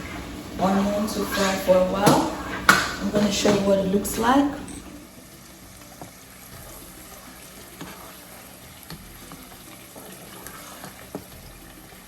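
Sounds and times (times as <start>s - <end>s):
onions sizzling in oil: 0.0s - 12.0s
spoon knocking and scraping pan: 1.1s - 4.8s, 5.9s - 11.6s.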